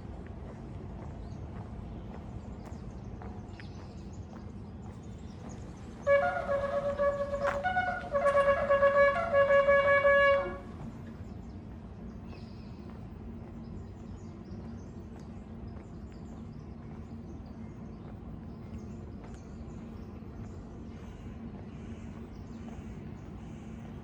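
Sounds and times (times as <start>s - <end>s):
low background rumble: 0.0s - 24.0s
faint hum: 3.8s - 24.0s
shofar blowing short notes: 6.0s - 10.7s.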